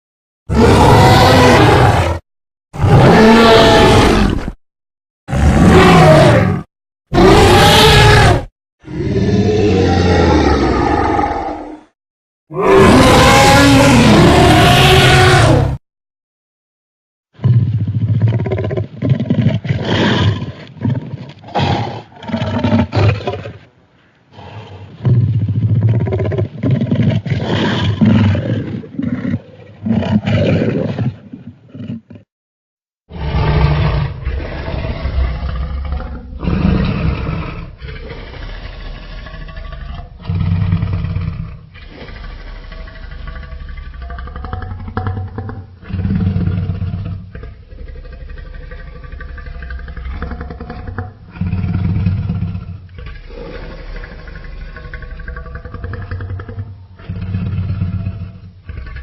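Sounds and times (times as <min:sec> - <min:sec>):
deep dinosaur roars: 0:00.5 - 0:02.2, 0:02.8 - 0:04.6, 0:05.3 - 0:11.9, 0:12.5 - 0:15.8, 0:33.1 - 0:59.0
low growl: 0:33.1 - 0:59.0.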